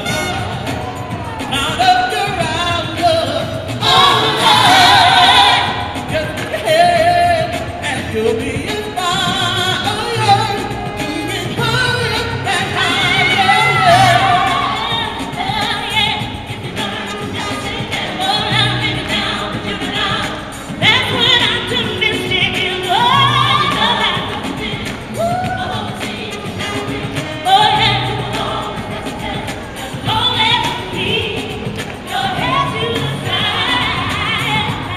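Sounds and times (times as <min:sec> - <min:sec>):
gospel vocal ensemble singing: 0:00.0 - 0:34.9
steady bass: 0:00.0 - 0:34.9.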